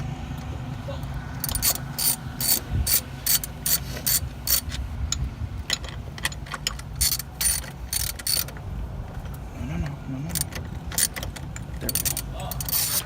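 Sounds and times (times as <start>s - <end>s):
ratchet wrench clicking: 1.4s - 8.6s, 10.3s - 13.0s.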